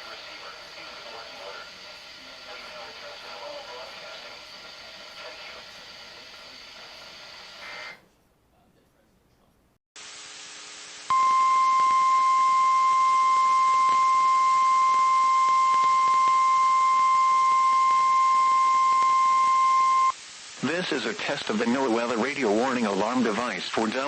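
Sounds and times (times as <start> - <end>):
radio static hiss: 0.0 - 8.1, 10.0 - 24.0
loud steady alarm tone: 11.1 - 20.2.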